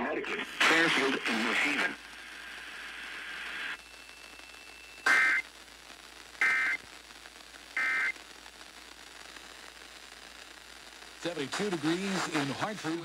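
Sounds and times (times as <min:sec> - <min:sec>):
digital data tone bursts: 0:04.0 - 0:05.4, 0:06.4 - 0:06.8, 0:07.8 - 0:08.1.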